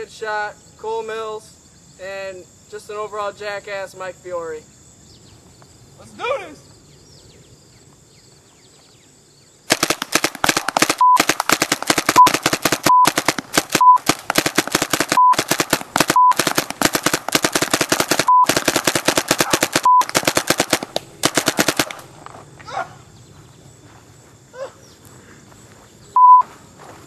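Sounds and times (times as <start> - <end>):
paintball gun firing: 9.7 - 22.2
short beeps: 11.0 - 11.2, 12.9 - 13.2, 13.8 - 14.0, 15.2 - 15.4, 16.2 - 16.4, 18.3 - 18.5, 19.8 - 20.1, 26.2 - 26.5.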